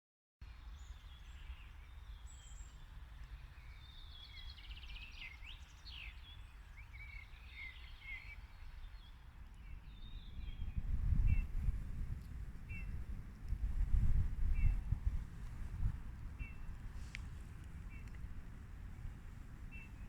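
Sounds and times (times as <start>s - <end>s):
small birds chirping: 0.5s - 20.0s
steady low rumble: 8.6s - 20.0s.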